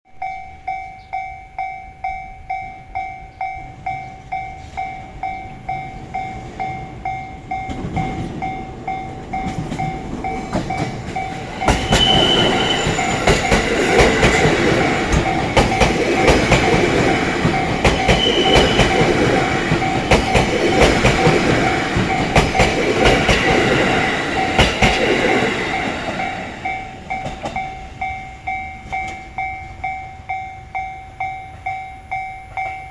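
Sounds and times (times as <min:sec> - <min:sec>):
electric train passing: 0:00.2 - 0:32.9
wheels clattering over rail joints: 0:06.4 - 0:29.5
level crossing bell ringing: 0:25.8 - 0:32.9.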